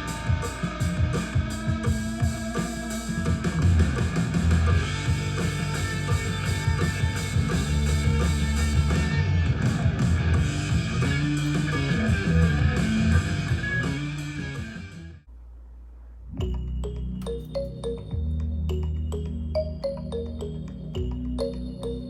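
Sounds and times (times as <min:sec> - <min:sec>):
rock music through speaker: 0:00.0 - 0:15.2.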